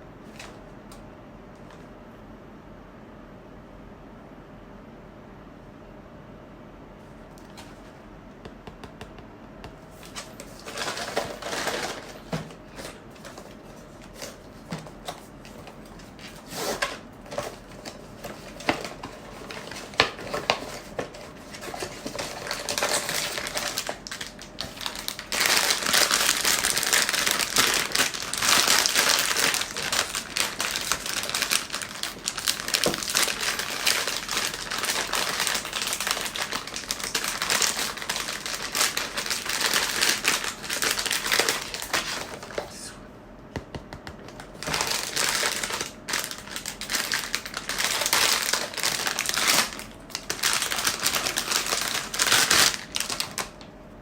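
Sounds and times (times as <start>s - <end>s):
plastic wrapping crinkling: 9.9s - 42.7s, 44.3s - 53.6s.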